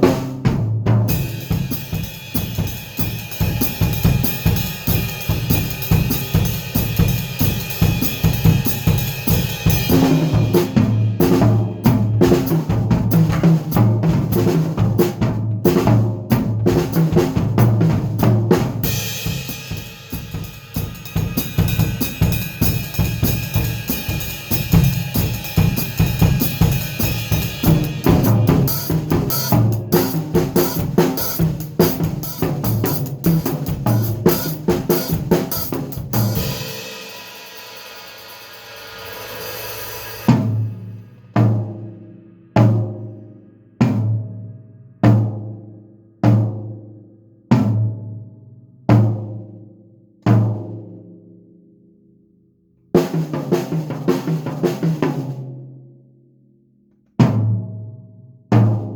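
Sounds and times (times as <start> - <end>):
drum kit playing: 0.0 - 43.2, 53.0 - 55.4
heavy drum strikes: 0.0 - 45.5.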